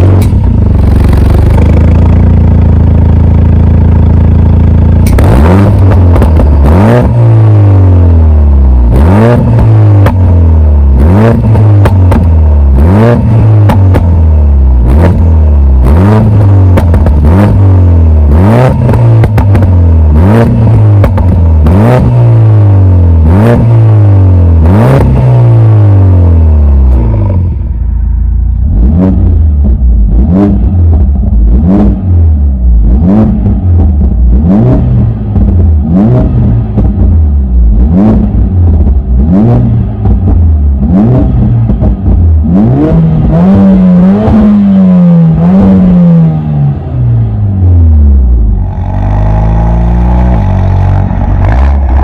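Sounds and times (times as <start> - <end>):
car engine idling: 0.0 - 23.2, 25.6 - 52.0
car engine revving: 0.0 - 52.0
exhaust pops and bangs: 5.0 - 6.6, 11.4 - 12.4, 13.2 - 14.2, 16.6 - 17.6, 18.7 - 19.8, 20.4 - 21.6, 35.2 - 37.2, 38.1 - 42.3.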